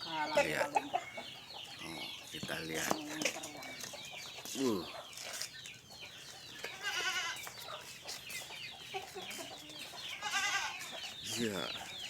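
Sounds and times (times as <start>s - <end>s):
chickens clucking and chirping: 0.0s - 12.0s.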